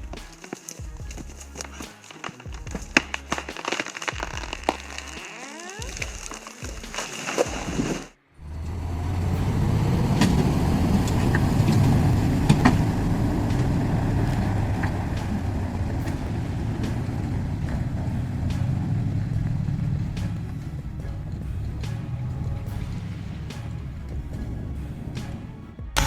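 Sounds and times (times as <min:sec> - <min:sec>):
large engine rumbling: 0:07.8 - 0:26.0.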